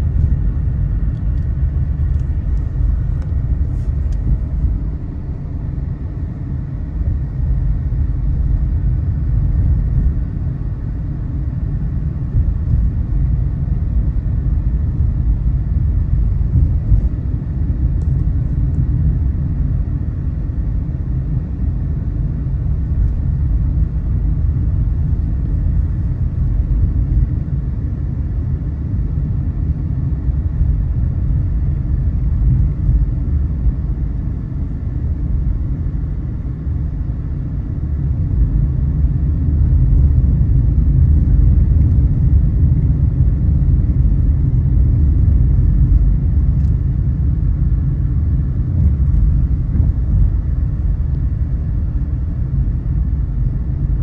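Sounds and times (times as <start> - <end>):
car engine and road rumble: 0.0 - 54.0.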